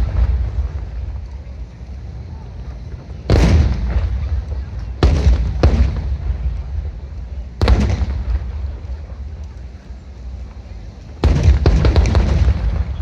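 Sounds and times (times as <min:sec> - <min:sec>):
firework shells booming: 0:03.3 - 0:09.5, 0:11.2 - 0:13.0.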